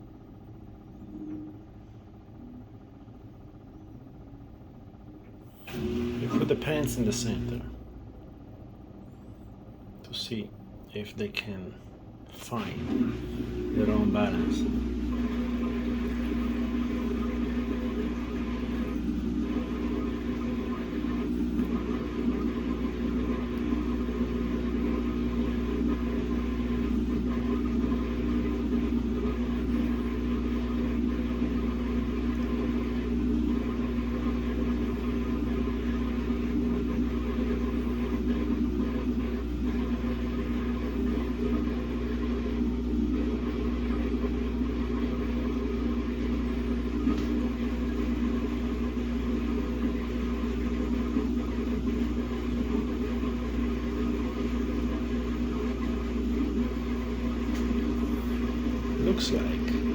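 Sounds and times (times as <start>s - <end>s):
washing machine motor hum: 0.0s - 59.9s.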